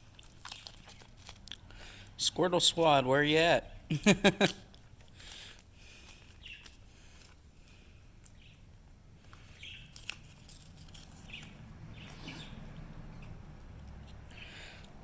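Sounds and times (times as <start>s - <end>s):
trading cards rustling: 0.0s - 1.7s, 4.3s - 8.5s, 9.2s - 12.5s.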